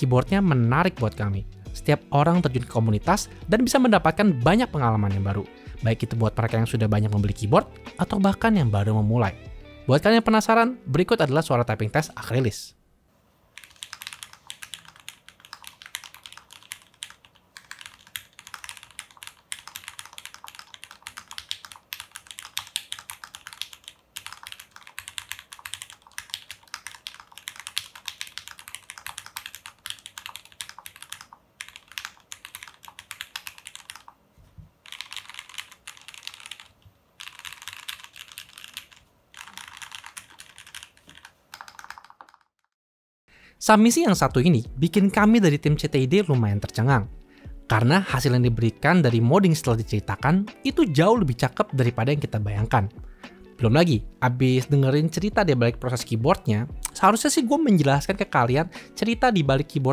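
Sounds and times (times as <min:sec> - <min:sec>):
mechanical keyboard typing: 0:13.5 - 0:34.2, 0:34.8 - 0:42.7.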